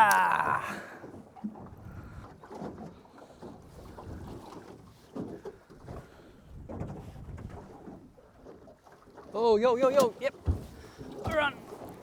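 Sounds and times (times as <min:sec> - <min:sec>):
water lapping: 0:00.0 - 0:12.0
wind rumble on microphone: 0:01.4 - 0:04.6, 0:05.2 - 0:08.2.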